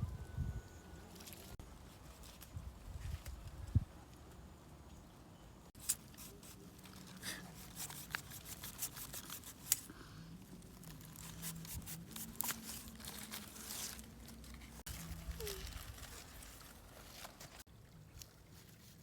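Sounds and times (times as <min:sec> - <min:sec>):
low crinkling rustle: 0:12.4 - 0:19.0.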